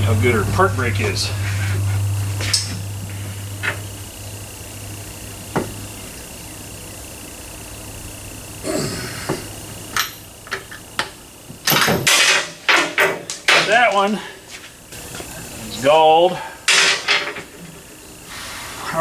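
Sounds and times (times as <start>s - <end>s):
hand tools clicking and clanking: 9.2s - 15.5s, 16.3s - 17.9s.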